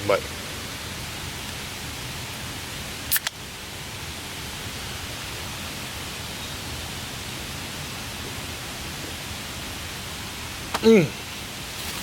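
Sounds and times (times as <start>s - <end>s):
sharp double click: 3.1s - 3.4s
rain on a tarp: 6.8s - 12.0s.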